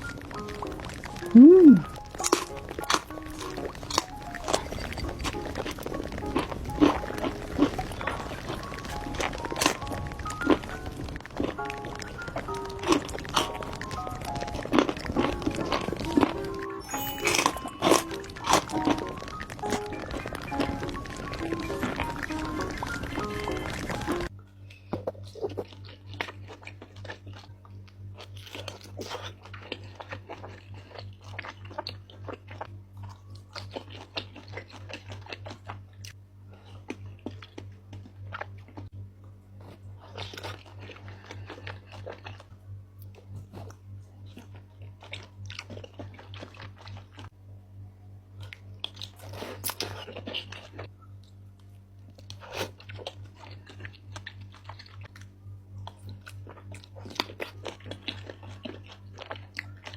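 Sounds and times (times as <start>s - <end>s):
low steady hum: 0.0s - 59.9s
person biting and chewing: 0.3s - 27.6s, 28.2s - 38.9s, 39.5s - 47.3s, 48.4s - 50.9s, 52.0s - 59.9s
wet mouth noises: 1.1s - 4.8s.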